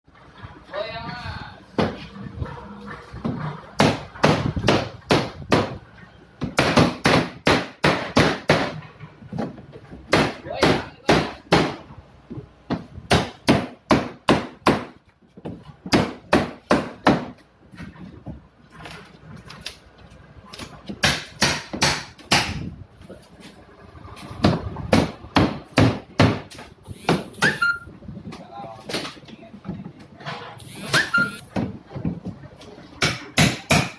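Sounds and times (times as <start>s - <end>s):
sharp knocks: 3.2s - 5.8s, 21.0s - 22.7s
brief squeak: 27.4s - 27.9s, 30.4s - 31.5s.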